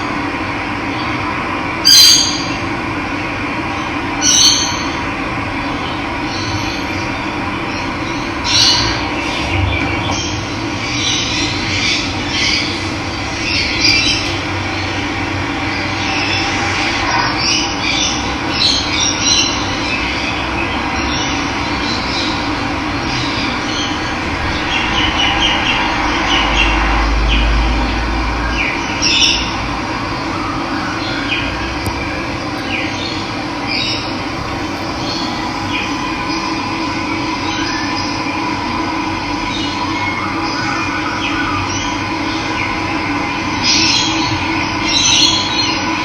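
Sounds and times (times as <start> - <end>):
birds chirping: 5.7 - 27.9, 28.5 - 38.5.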